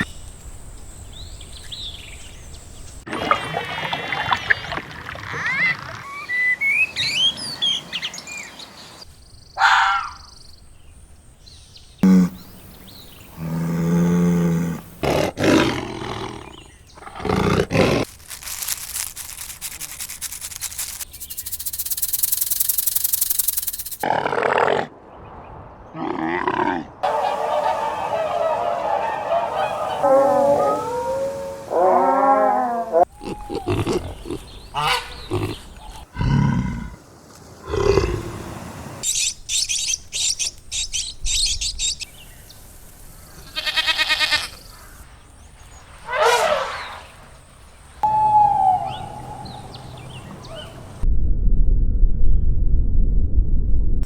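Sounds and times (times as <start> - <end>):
bird chirps: 21.1 - 24.0, 48.0 - 51.0
big cat roars: 35.2 - 37.0, 37.6 - 38.5.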